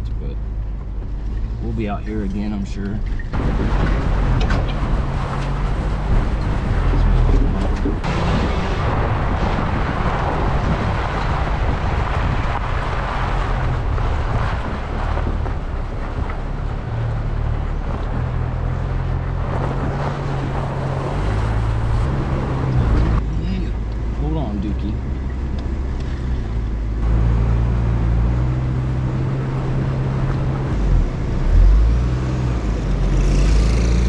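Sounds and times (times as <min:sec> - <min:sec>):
wind noise: 0:03.0 - 0:23.3
truck engine drone: 0:03.0 - 0:34.0.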